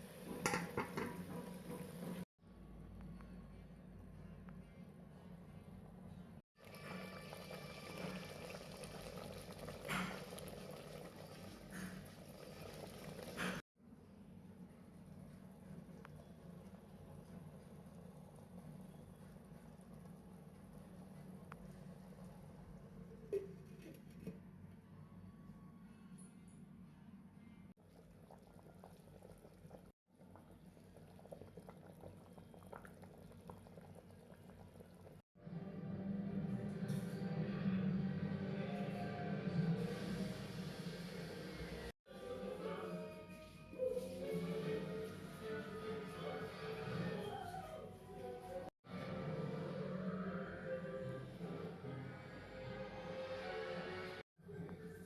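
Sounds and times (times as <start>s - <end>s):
food sizzling and bubbling in pot: 0.0s - 2.3s, 6.6s - 13.6s, 14.9s - 24.2s, 27.8s - 35.2s, 39.7s - 41.9s.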